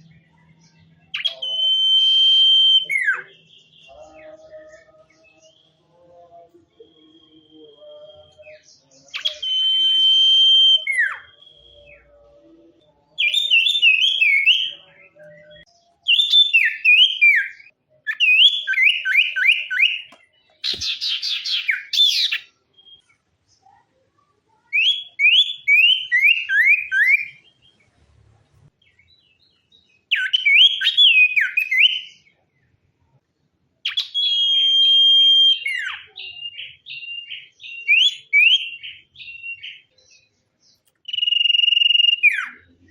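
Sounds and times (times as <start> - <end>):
songbird whistled phrases: 1.1 - 5.8, 6.6 - 12.2, 13.2 - 23.1, 24.6 - 27.5, 30.1 - 32.3, 33.8 - 39.9, 41.0 - 42.8.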